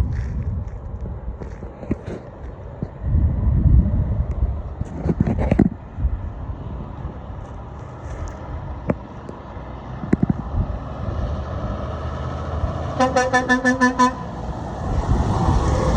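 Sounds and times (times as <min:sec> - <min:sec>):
road traffic rumble: 0:00.0 - 0:15.9
vehicle horn short toots: 0:13.0 - 0:14.3.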